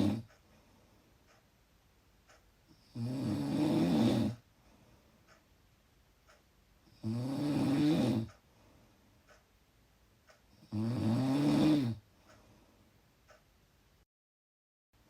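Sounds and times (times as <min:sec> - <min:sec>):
loud snoring: 0:00.0 - 0:00.3, 0:02.8 - 0:04.4, 0:06.9 - 0:08.3, 0:10.6 - 0:12.0.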